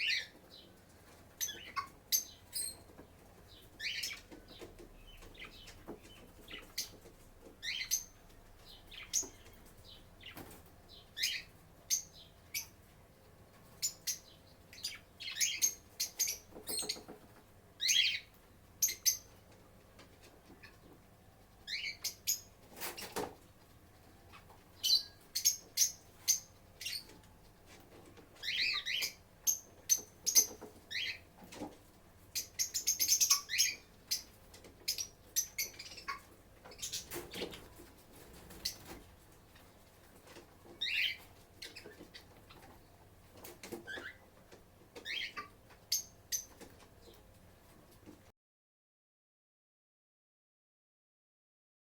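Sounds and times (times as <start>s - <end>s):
lovebirds chirping: 0.0s - 12.9s, 13.5s - 17.2s, 17.8s - 19.4s, 21.6s - 23.3s, 24.0s - 27.4s, 28.2s - 31.7s, 32.3s - 43.0s, 45.0s - 47.2s.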